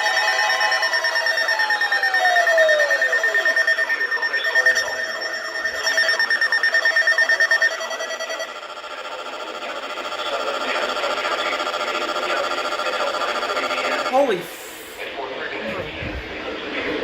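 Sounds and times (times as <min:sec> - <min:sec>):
pulsing electronic alert tones: 0:00.0 - 0:14.2.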